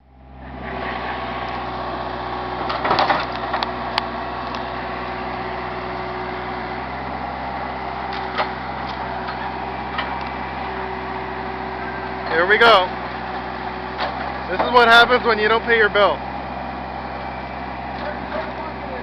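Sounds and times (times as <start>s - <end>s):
diesel engine running: 0.0s - 19.0s
sharp knocks and crunches: 2.7s - 3.6s.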